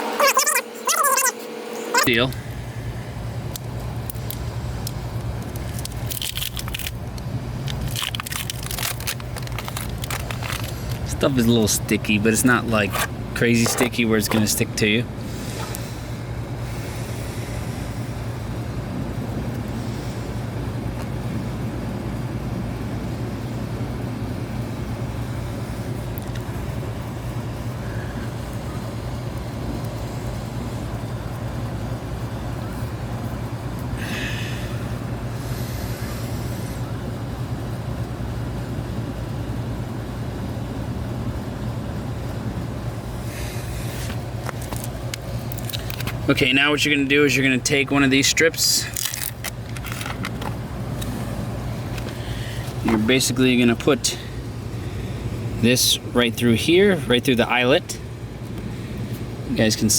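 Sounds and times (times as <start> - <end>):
steady low hum: 0.0 - 59.9
scratchy crinkling of small parts: 3.6 - 14.6, 44.0 - 53.4.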